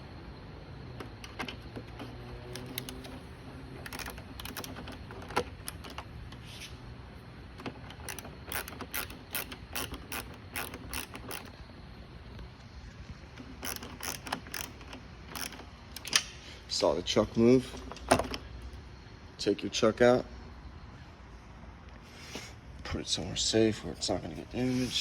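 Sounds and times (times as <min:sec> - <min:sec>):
ratcheting driver clicking: 0:01.0 - 0:06.1, 0:07.9 - 0:11.6, 0:13.4 - 0:16.3.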